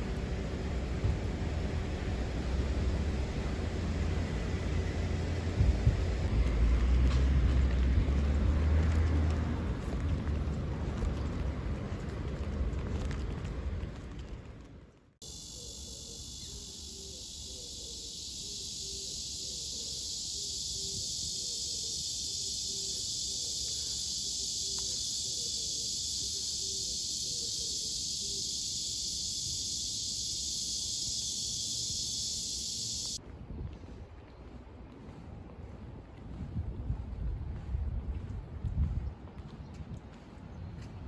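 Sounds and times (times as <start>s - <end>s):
insects buzzing: 0.0s - 7.3s, 15.2s - 33.2s.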